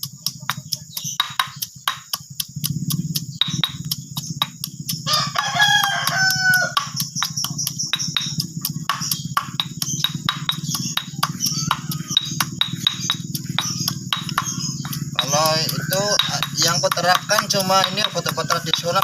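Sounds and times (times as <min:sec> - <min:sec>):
pestle pounding in mortar: 0:00.0 - 0:19.0
steady low hum: 0:00.0 - 0:19.0
rooster crowing: 0:04.9 - 0:08.4, 0:10.7 - 0:19.0.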